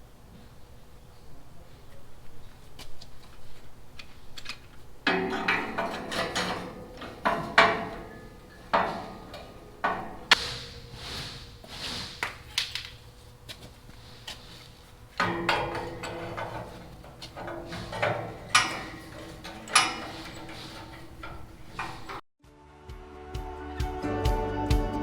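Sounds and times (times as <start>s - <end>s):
steel pieces clanking: 4.3s - 22.2s.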